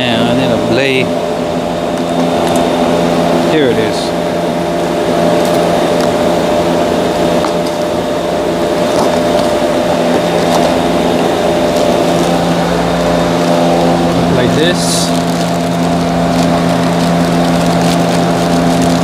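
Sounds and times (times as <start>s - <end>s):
steady mechanical drone: 0.0s - 19.0s.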